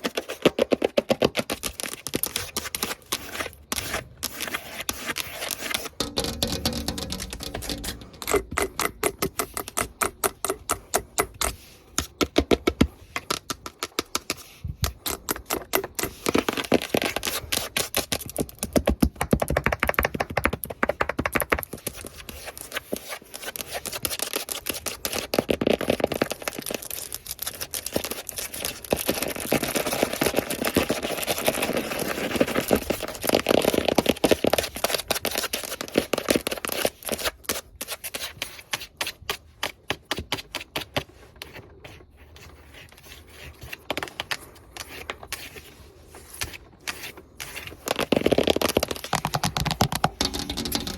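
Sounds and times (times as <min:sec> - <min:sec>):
nails scratching: 0:02.4 - 0:09.1, 0:50.0 - 0:50.9.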